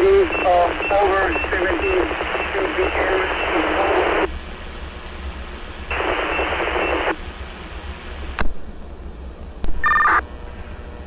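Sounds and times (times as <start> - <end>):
radio static hiss: 0.0 - 8.7, 9.6 - 10.2
steady low hum: 0.0 - 11.0
two-tone data chirp: 0.2 - 4.2, 5.9 - 7.1, 9.8 - 10.2
radio clicks: 0.3 - 4.3, 5.9 - 7.2.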